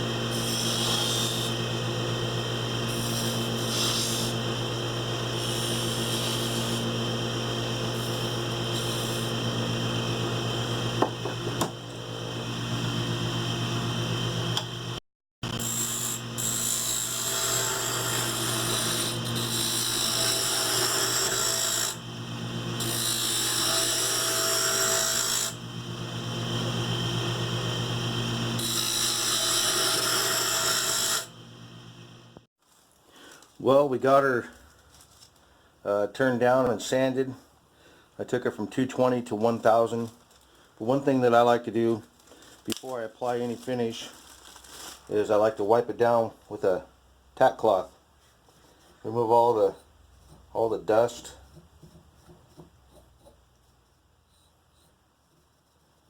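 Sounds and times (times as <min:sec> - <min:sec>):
wood lathe motor hum: 0:00.1 - 0:14.7, 0:15.6 - 0:31.9.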